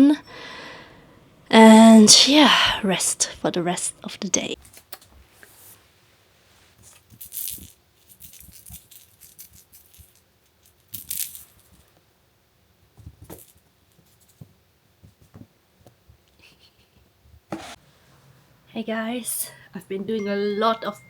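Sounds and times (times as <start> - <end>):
small objects rattling and clicking: 6.9 - 11.9.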